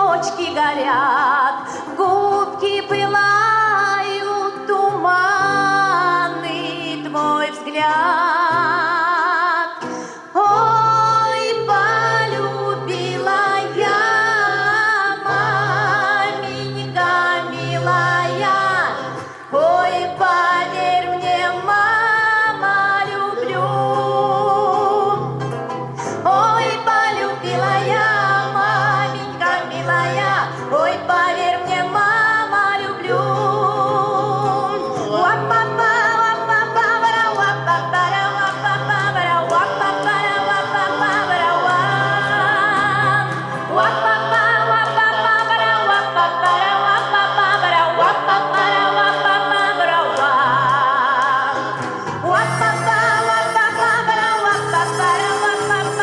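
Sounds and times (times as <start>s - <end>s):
voices singing with vibrato: 0.0s - 56.0s.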